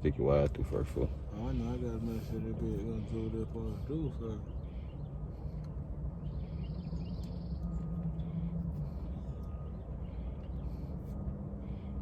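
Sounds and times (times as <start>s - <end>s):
steady low hum: 0.0s - 12.0s
faint high chirping: 6.2s - 12.0s.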